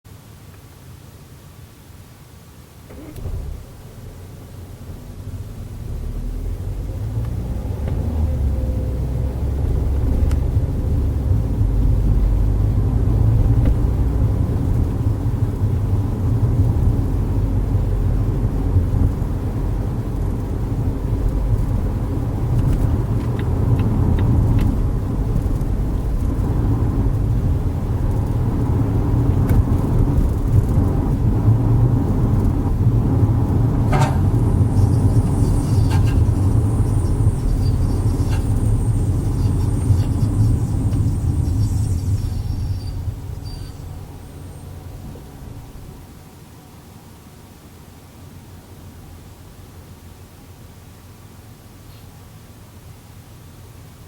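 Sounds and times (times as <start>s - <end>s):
car engine and road noise: 0.1s - 54.0s
high squealing noise: 33.9s - 44.9s.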